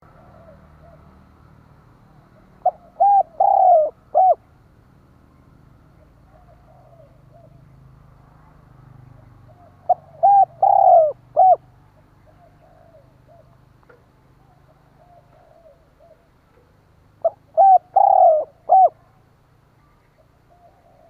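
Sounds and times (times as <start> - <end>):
dove cooing: 0.0 - 1.2, 2.4 - 4.5, 6.0 - 7.8, 9.2 - 13.6, 14.4 - 19.2, 20.1 - 21.0.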